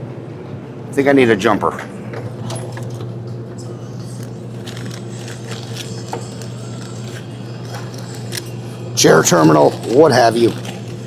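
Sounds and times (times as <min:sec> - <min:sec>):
steady low hum: 0:00.0 - 0:11.0
small parts clicking and rustling: 0:04.2 - 0:08.6.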